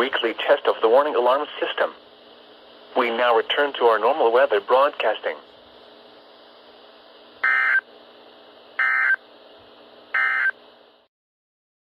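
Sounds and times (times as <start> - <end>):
digital data bursts: 7.4 - 7.8, 10.2 - 10.5.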